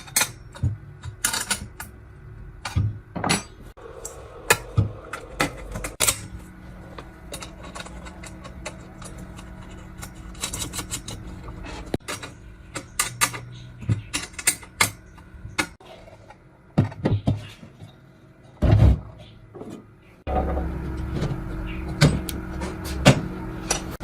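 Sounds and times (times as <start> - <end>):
metal parts clicking and knocking: 0.0 - 2.0, 2.6 - 15.8
low hum: 3.7 - 14.4, 20.3 - 24.0.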